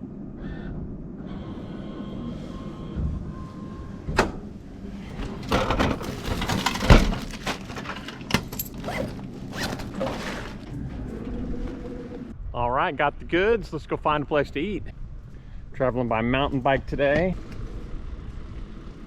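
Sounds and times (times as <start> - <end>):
packaging rustling and clattering: 5.1 - 12.2
thud: 5.5 - 7.6.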